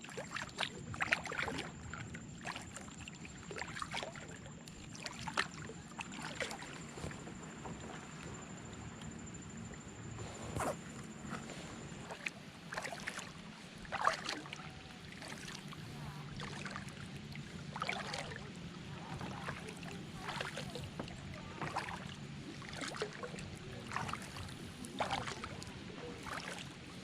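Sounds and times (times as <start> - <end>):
paddle splashing into water: 0.0 - 1.7, 12.0 - 15.7, 16.3 - 17.0, 17.7 - 25.6, 26.2 - 26.7
steady low hum: 0.0 - 27.0.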